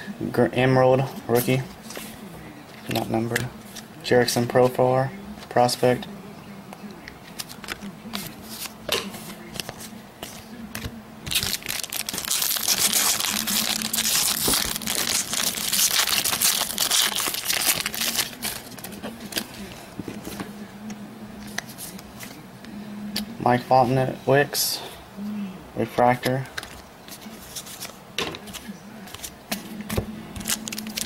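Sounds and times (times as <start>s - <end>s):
foil wrapper crinkling: 11.3s - 19.5s, 30.4s - 31.0s.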